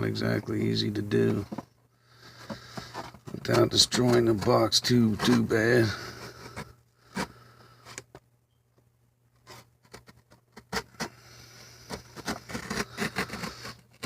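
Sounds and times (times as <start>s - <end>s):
knife cutting plastic packaging: 11.9s - 14.0s.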